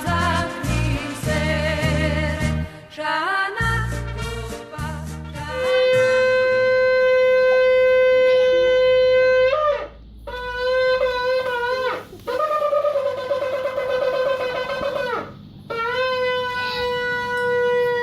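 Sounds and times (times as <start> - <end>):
shofar blasts: 5.3 - 18.0.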